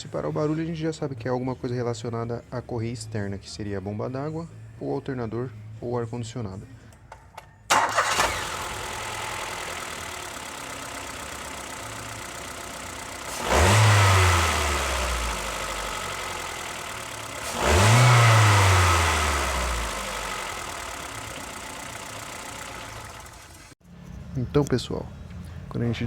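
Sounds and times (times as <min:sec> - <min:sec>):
car engine idling and revving: 0:07.7 - 0:24.3.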